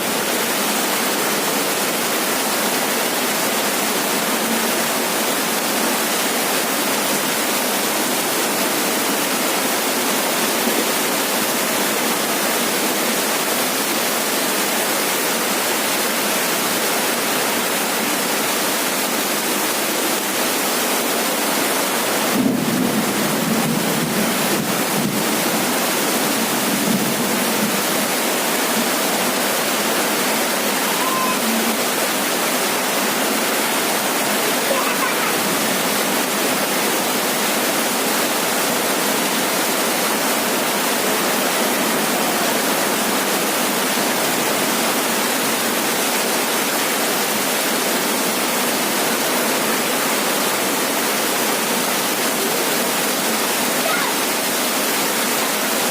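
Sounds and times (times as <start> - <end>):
heavy rain drumming on a roof: 0.0 - 55.9.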